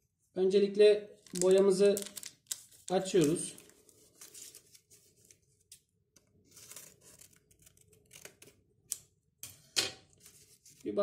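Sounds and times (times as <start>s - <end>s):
packet tearing and crinkling: 1.2s - 4.8s.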